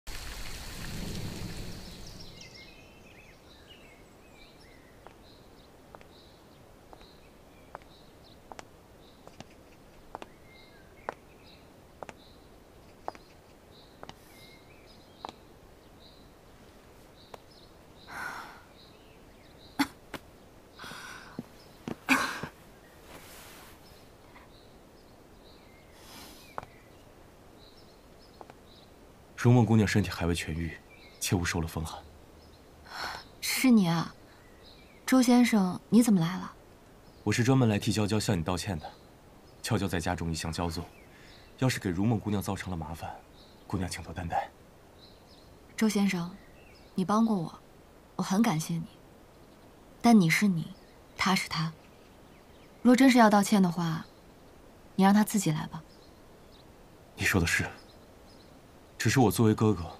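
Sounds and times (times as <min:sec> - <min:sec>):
rush of noise: 0:00.1 - 0:02.6
faint chirp: 0:00.2 - 0:16.4, 0:17.0 - 0:47.6
woman coughing: 0:19.8 - 0:20.0, 0:22.1 - 0:22.6.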